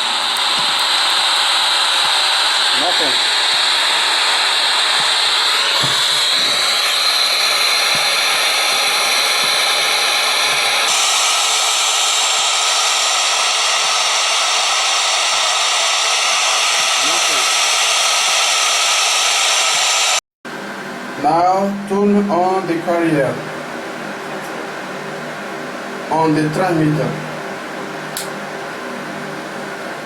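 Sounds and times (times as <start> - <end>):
radio static hiss: 0.0 - 20.2.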